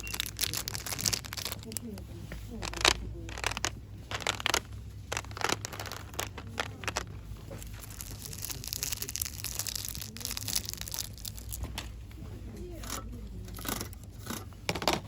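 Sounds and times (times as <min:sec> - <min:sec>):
packaging crinkling: 0:00.0 - 0:02.0, 0:02.6 - 0:11.8.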